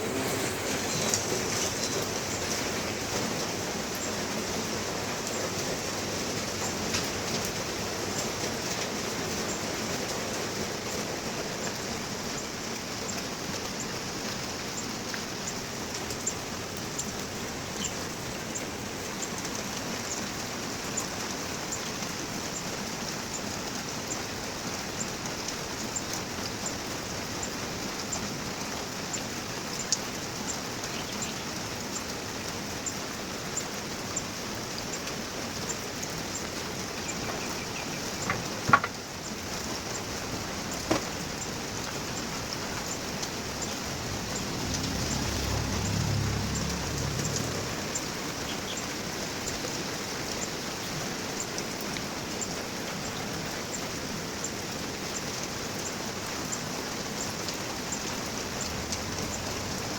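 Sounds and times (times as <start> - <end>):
steady rain hiss: 0.0 - 59.9
raindrops ticking: 33.6 - 59.9.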